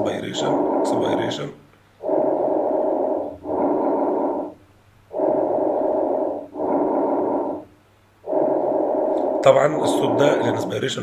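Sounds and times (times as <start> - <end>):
breath sounds: 2.0 - 9.4.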